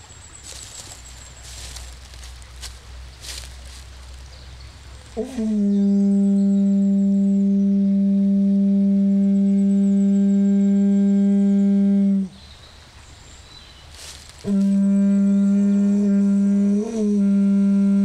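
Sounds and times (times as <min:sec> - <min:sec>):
conch shell horn note: 0:05.2 - 0:12.4, 0:14.4 - 0:18.0.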